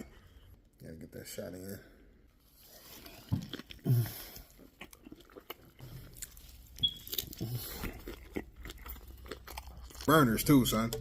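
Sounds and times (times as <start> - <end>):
person chewing burger: 2.5 - 11.0.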